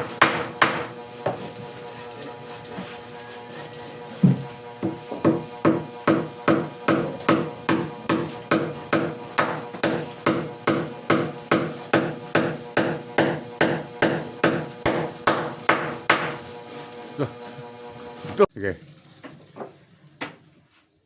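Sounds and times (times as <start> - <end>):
hammer blows: 3.0 - 16.5.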